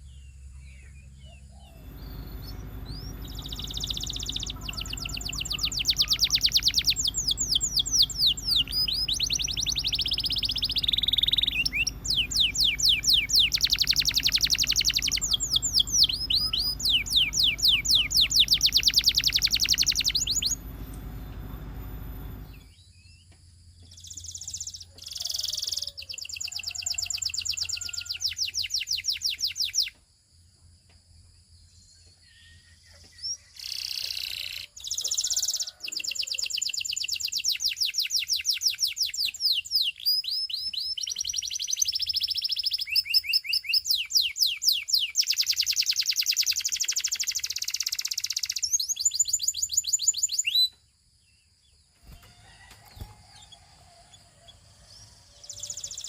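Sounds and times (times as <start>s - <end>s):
canary singing trills: 0.0s - 22.7s, 32.4s - 50.8s, 52.0s - 56.0s
low steady hum: 0.0s - 23.8s.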